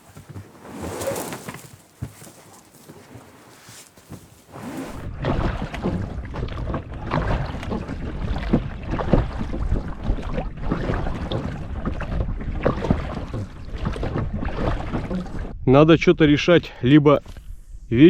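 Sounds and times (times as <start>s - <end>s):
water splashing around boat: 0.0s - 15.6s
wind rumbling on microphone: 4.5s - 18.0s.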